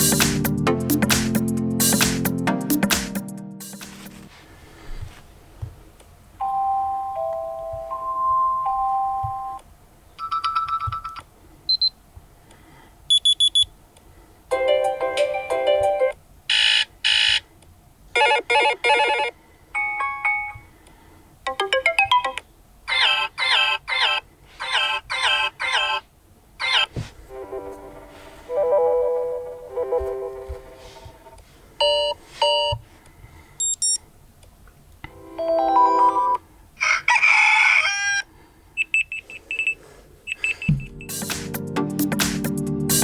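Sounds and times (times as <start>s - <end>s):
phone alarm chimes and beeps: 6.4s - 9.6s, 10.2s - 11.9s, 18.2s - 20.7s, 31.8s - 32.8s, 33.6s - 34.0s, 38.8s - 41.2s.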